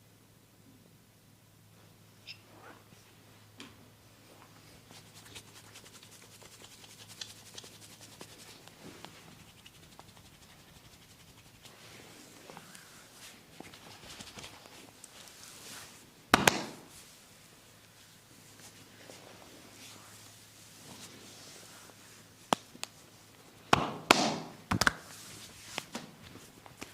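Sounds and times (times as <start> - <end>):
hands rubbing hair and skin: 4.4 - 17.2, 17.9 - 23.2, 24.4 - 26.9.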